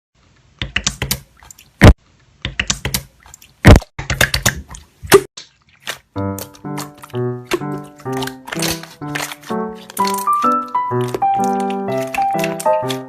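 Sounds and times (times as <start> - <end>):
slime squished by hand: 3.3 - 13.0
background music: 6.2 - 13.0.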